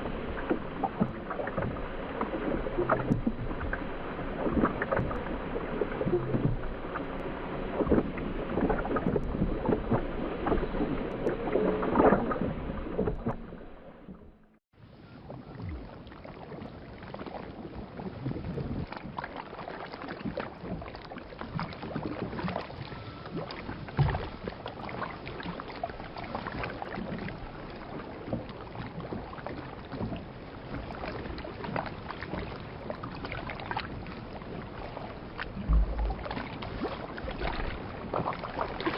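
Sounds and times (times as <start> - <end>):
muffled underwater water movement: 0.0 - 38.9
small bubbles crackling: 35.4 - 38.9.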